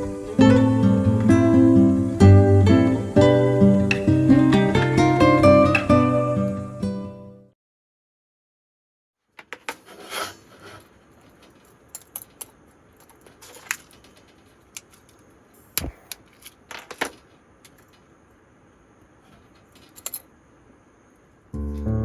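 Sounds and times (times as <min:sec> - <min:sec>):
faint steady hiss: 0:00.0 - 0:07.1, 0:09.2 - 0:22.0
small objects clicking and clinking: 0:11.1 - 0:18.1, 0:19.3 - 0:20.3.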